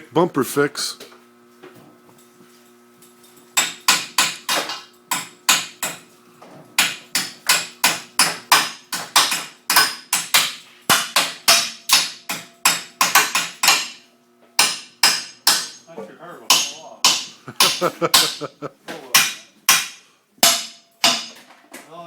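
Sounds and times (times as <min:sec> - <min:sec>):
hammer striking steel: 0:03.6 - 0:06.0, 0:06.8 - 0:14.0, 0:14.6 - 0:15.9, 0:16.5 - 0:18.6, 0:19.2 - 0:21.5.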